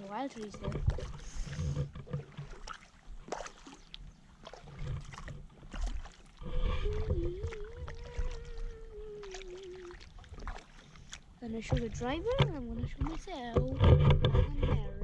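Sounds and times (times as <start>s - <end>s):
paddle splashing in water: 0.0s - 15.0s
water dripping: 2.2s - 13.6s
low handling rumble: 6.4s - 10.0s, 11.4s - 15.0s
wavering hum: 6.4s - 10.6s.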